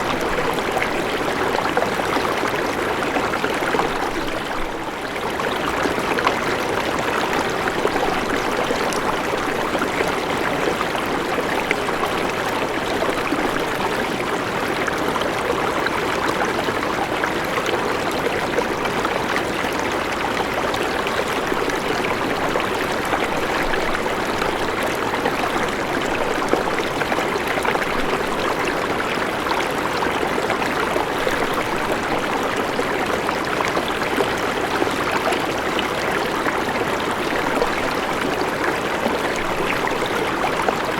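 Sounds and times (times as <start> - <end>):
river water rushing: 19.8 - 40.9.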